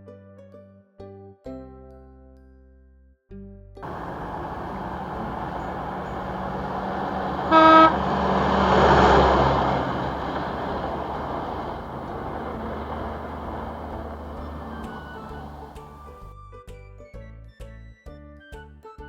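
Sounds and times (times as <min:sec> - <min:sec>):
car horn honk: 0:03.8 - 0:11.3
vehicle passing: 0:03.8 - 0:15.9
traffic engine and road noise: 0:03.8 - 0:16.1.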